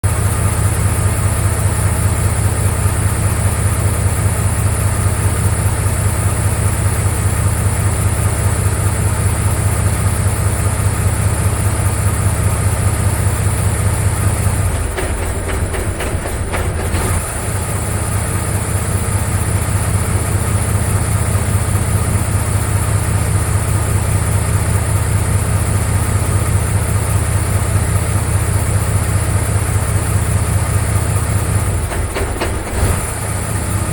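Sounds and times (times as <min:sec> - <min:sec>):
machine running with low drone: 0:11.2 - 0:28.6, 0:29.3 - 0:33.9
machine clicks: 0:14.5 - 0:17.4, 0:31.7 - 0:33.1.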